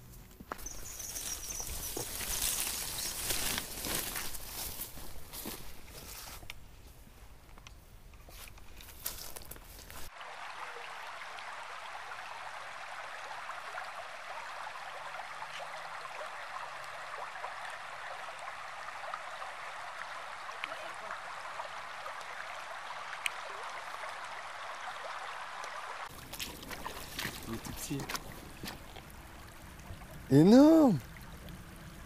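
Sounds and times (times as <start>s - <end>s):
river water rushing over shallows: 10.1s - 32.0s.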